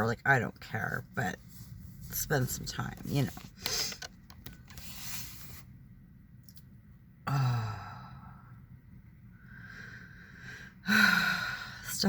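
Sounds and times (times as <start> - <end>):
woman sighing: 7.2 - 8.4, 10.8 - 11.9
woman breathing in: 9.4 - 11.9.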